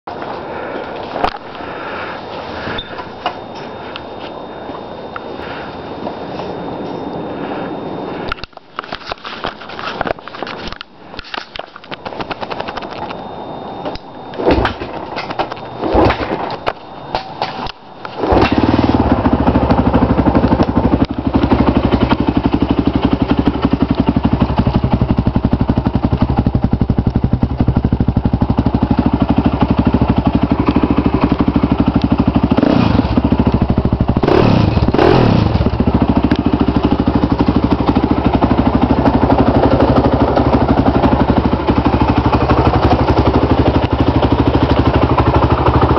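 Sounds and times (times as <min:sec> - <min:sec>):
engine throttle blips: 0:11.8 - 0:45.9
quad engine idling: 0:18.2 - 0:45.9
engine knocking and sputtering: 0:18.3 - 0:45.9.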